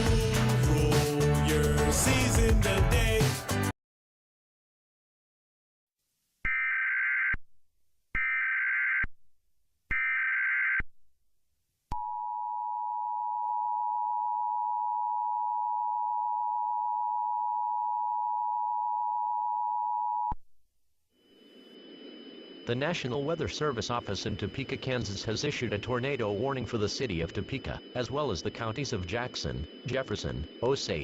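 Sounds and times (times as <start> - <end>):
buzzing data bursts: 21.3 - 31.0
two-tone attention signal: 21.3 - 31.0.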